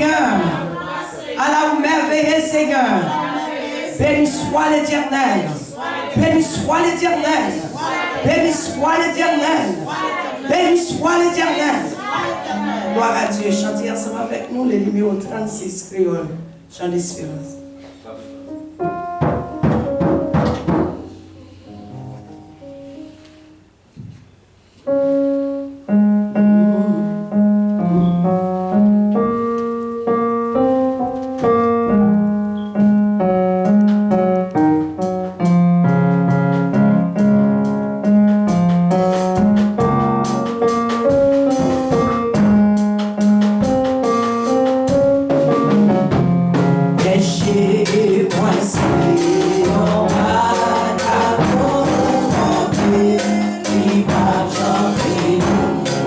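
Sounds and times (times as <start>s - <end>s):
church keyboard playing a hymn: 0.0s - 56.0s
percussion: 33.6s - 56.0s.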